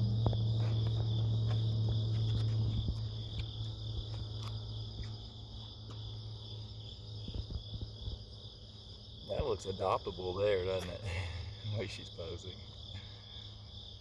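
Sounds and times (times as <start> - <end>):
crickets chirping: 0.0 - 14.0
low hum: 0.0 - 14.0.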